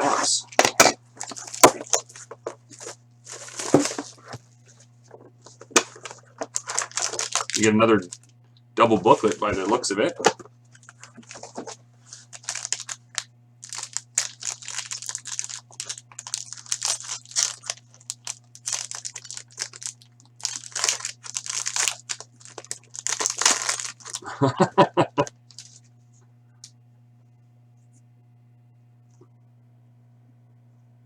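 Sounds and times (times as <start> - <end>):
plastic packaging crinkling and tearing: 0.5 - 24.6, 25.5 - 25.8.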